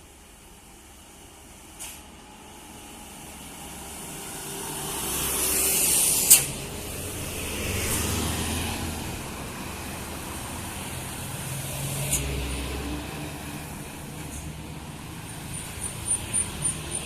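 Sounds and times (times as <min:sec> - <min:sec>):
short sharp hiss: 0:01.8 - 0:02.1, 0:05.7 - 0:06.8
vehicle passing close by: 0:03.9 - 0:17.0.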